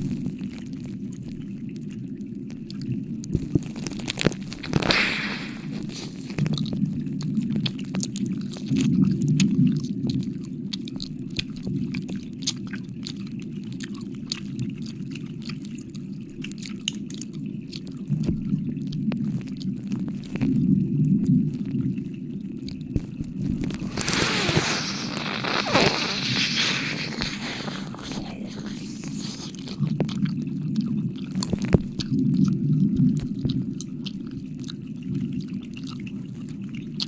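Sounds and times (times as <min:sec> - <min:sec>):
lip smacks and tongue clicks: 0:02.7 - 0:20.6, 0:22.7 - 0:37.0
breathy blow into microphone: 0:03.8 - 0:06.4, 0:23.4 - 0:29.9.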